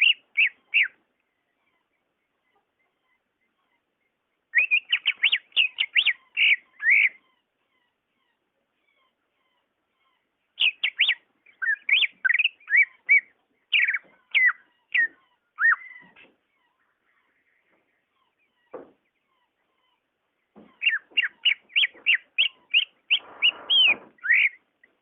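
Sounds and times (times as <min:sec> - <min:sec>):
bird singing whistled notes: 0:00.0 - 0:01.0, 0:04.5 - 0:07.2, 0:10.6 - 0:16.1, 0:20.8 - 0:24.7.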